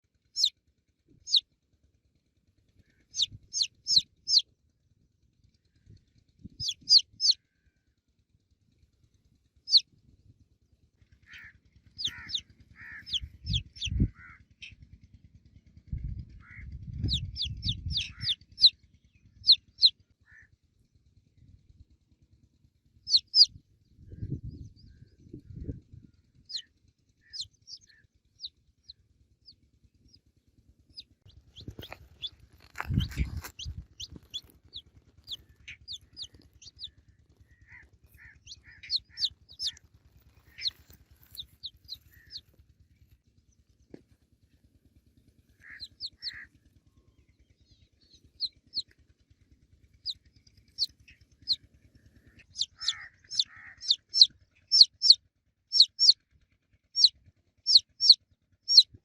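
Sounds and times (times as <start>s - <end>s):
baby chicks peeping: 1.2s - 1.4s, 3.0s - 4.4s, 6.5s - 7.4s, 11.3s - 14.8s, 16.4s - 18.7s, 19.4s - 19.9s, 23.1s - 23.5s, 26.5s - 28.5s, 30.9s - 37.0s, 37.6s - 43.2s, 45.6s - 46.5s, 48.1s - 49.0s, 49.9s - 56.2s, 57.0s - 59.0s.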